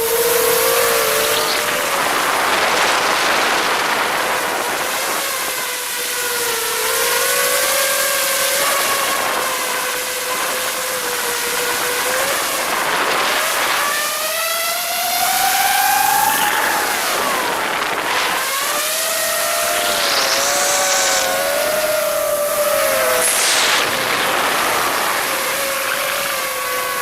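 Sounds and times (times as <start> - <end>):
drone motors whining: 0.0 - 27.0
rushing hiss of air: 19.1 - 25.6.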